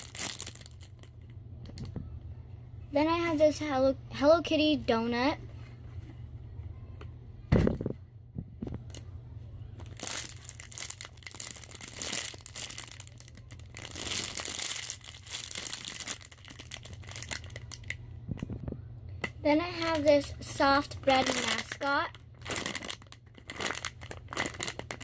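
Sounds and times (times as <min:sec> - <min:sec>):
squishy toy crinkling: 0:00.0 - 0:01.3, 0:09.8 - 0:18.0, 0:19.8 - 0:20.2, 0:21.0 - 0:25.0.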